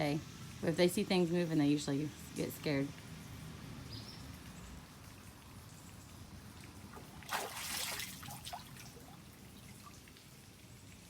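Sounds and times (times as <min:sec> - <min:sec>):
water drips: 0:04.1 - 0:11.0
water splashing in pond: 0:06.2 - 0:11.0.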